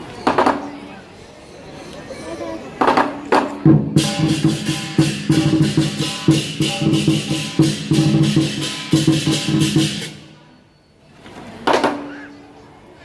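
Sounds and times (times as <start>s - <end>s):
drum beating: 2.9s - 10.4s
cymbals clashing: 3.7s - 10.7s.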